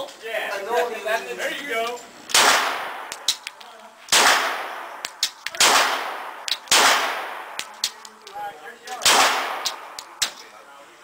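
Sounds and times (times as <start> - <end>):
faint sharp cracks: 1.9 - 10.6
pistol shots with echo: 2.3 - 3.5, 4.1 - 8.0, 9.0 - 10.4.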